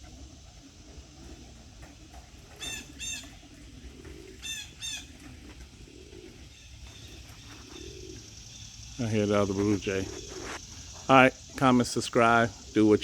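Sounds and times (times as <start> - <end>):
blue jay squawking: 2.6 - 3.4, 4.3 - 5.2.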